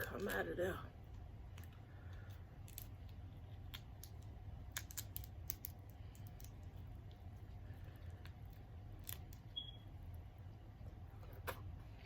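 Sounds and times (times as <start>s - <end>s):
low steady hum: 0.0s - 12.0s
shells cracking and clicking: 1.1s - 7.2s.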